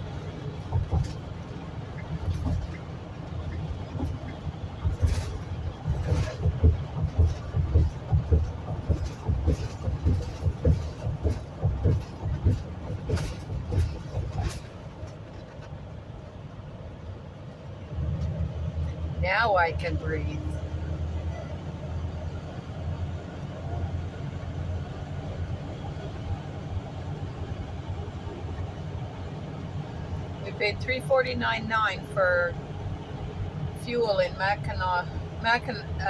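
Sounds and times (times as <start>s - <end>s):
vehicle road noise: 0.0s - 36.0s
low thumps and knocks: 0.1s - 15.2s.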